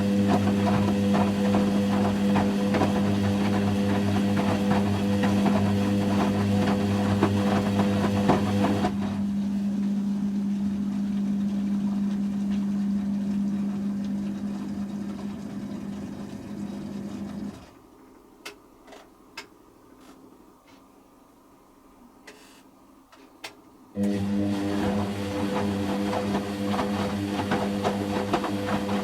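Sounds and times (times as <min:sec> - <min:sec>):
washing machine humming: 0:00.0 - 0:18.4, 0:23.8 - 0:29.0.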